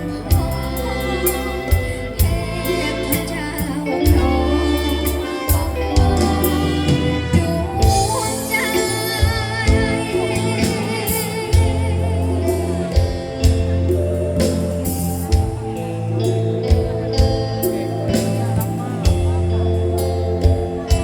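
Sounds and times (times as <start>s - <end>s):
singer with vibrato: 0.0s - 14.0s
bass line: 0.0s - 21.0s.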